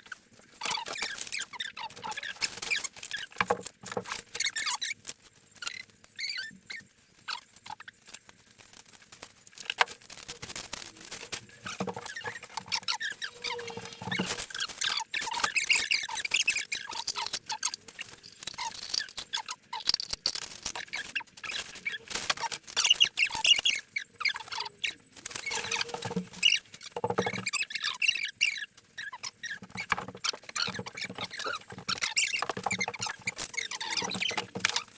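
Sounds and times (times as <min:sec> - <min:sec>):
small objects rustling and clicking: 0:00.0 - 0:34.9.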